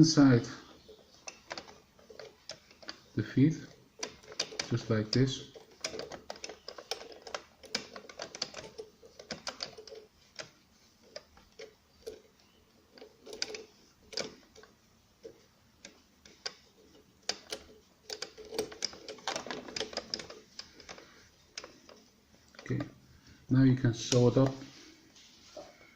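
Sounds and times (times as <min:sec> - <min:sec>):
fabric rustling: 0:24.2 - 0:25.9.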